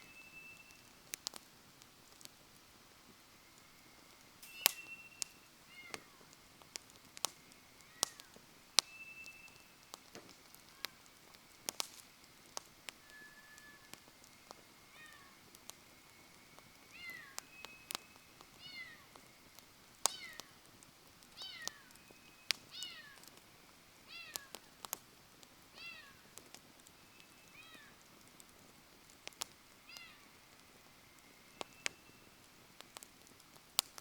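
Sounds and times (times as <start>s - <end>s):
campfire crackling and popping: 0.0s - 34.0s
whistling from burning wood: 0.0s - 34.0s
animal meow-like cries: 4.5s - 6.3s, 13.0s - 14.0s, 14.9s - 15.4s, 16.9s - 18.0s, 18.6s - 19.1s, 20.1s - 20.5s, 21.4s - 21.9s, 22.7s - 23.3s.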